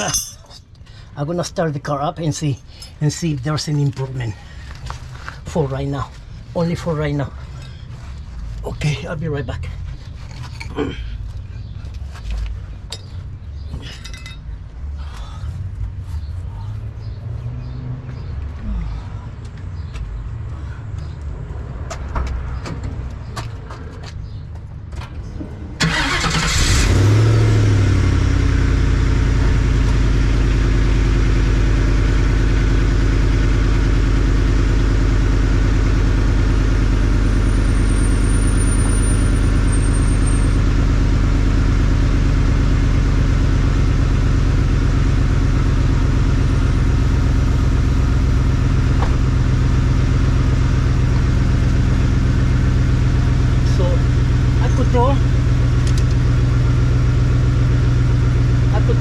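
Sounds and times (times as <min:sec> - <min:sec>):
car engine starting and idling: 0:25.3 - 0:59.0.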